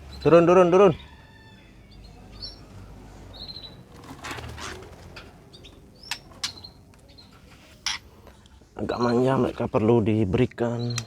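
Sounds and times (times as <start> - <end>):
small birds high chirps: 0.0 - 8.2, 10.6 - 11.0
wing-beats rustling: 2.6 - 8.2.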